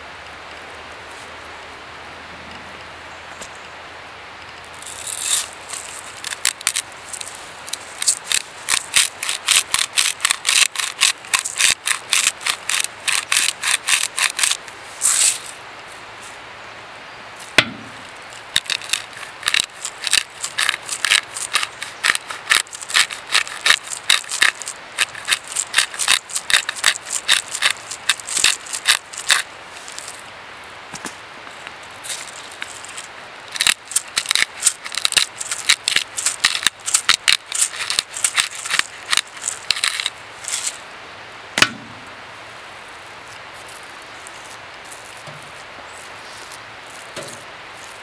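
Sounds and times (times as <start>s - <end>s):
rhythmic scraping strokes: 4.8s - 15.6s, 17.4s - 30.2s, 32.0s - 40.8s
sharp knock: 17.6s - 18.0s, 41.6s - 42.1s.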